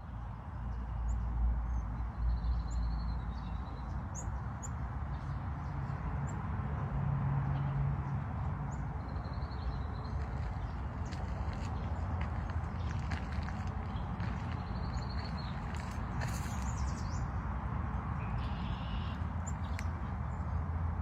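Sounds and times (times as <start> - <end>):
small birds chirping: 8.7 - 17.3.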